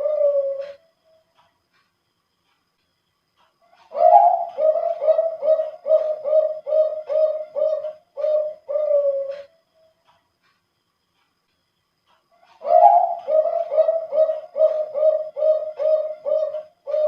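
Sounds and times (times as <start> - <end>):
dove cooing song: 0.0 - 1.1, 3.7 - 9.6, 12.4 - 17.0.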